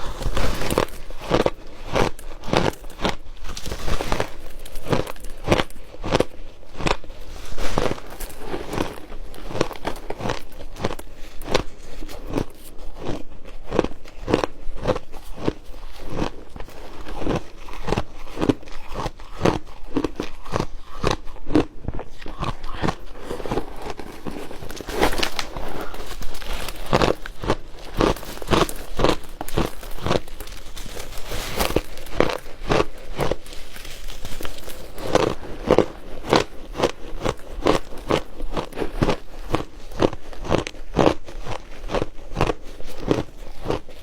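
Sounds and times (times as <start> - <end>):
crunchy chewing of shaved ice: 0.0 - 44.0.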